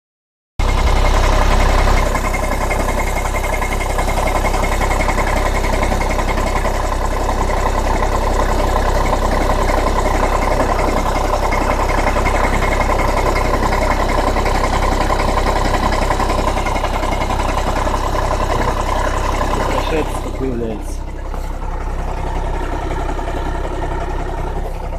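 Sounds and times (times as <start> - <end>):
diesel engine idling with knocking rattle: 0.6 - 24.9.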